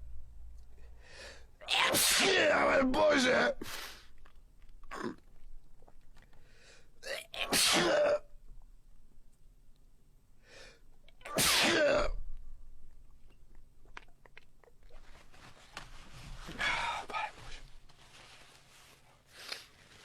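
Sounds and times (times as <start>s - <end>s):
person sneezing loudly: 1.6s - 4.0s, 7.1s - 8.2s, 11.2s - 12.2s.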